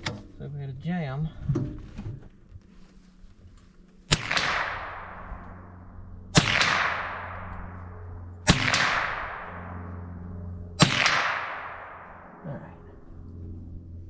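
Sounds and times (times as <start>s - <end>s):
rifle shots with echo: 4.1s - 13.0s.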